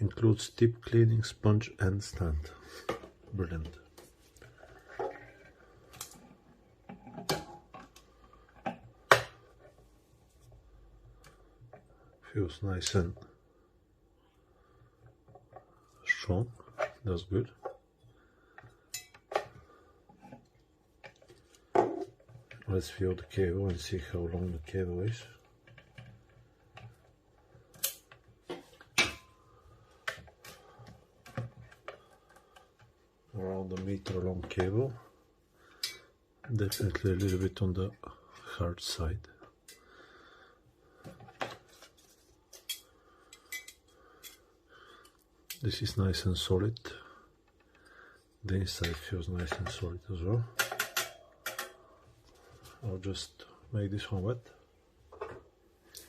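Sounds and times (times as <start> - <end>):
knocks and clatters of handling: 2.1 - 13.4, 15.0 - 35.1, 40.9 - 45.7, 47.4 - 52.8, 54.1 - 56.0
clicks and knocks of parts handled: 25.1 - 33.0, 41.0 - 44.4, 48.8 - 51.8.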